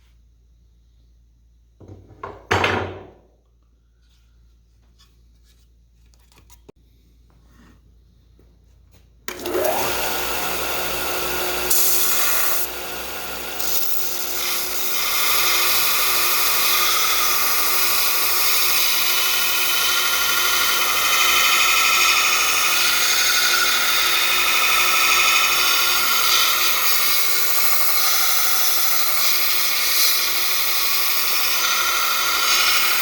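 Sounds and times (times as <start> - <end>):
electric power tool running: 9.3 - 33.0.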